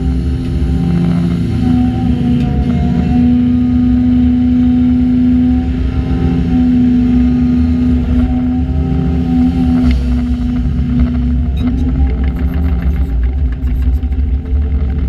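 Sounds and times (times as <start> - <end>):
diesel engines running: 0.0 - 15.0.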